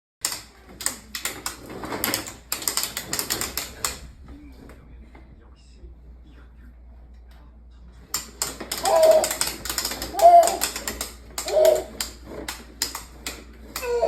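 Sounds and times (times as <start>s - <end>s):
sharp mechanical clicks: 0.2s - 4.2s.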